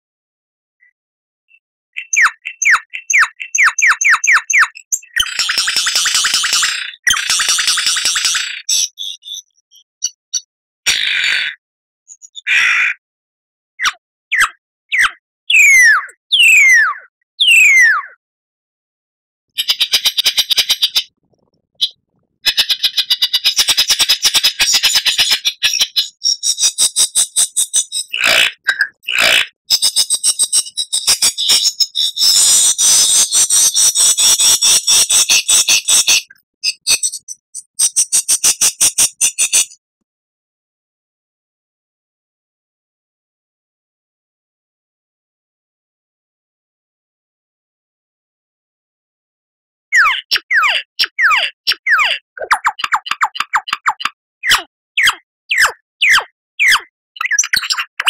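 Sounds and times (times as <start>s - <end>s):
lyrebird singing: 1.9s - 10.5s, 13.8s - 18.2s, 19.6s - 39.7s, 49.9s - 58.0s.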